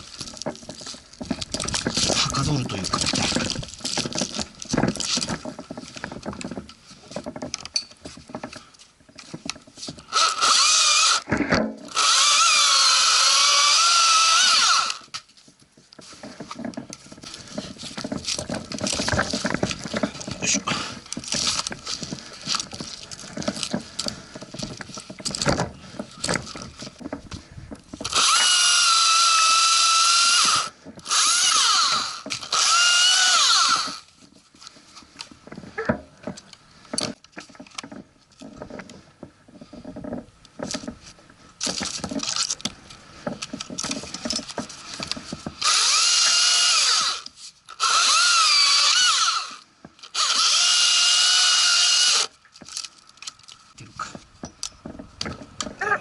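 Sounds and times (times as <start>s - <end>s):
branches knocking and rustling: 0.0s - 56.0s
chainsaw cutting wood: 10.1s - 15.2s, 28.0s - 34.1s, 43.4s - 52.8s.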